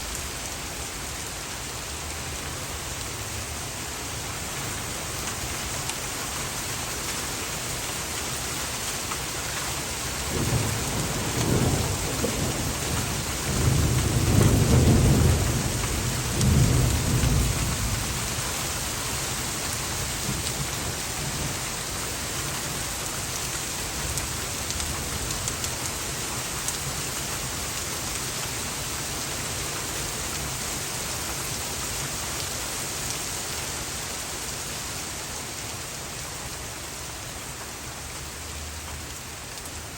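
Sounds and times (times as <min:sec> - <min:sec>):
heavy rain falling: 0:00.0 - 0:39.9
rolling thunder rumble: 0:10.3 - 0:18.3.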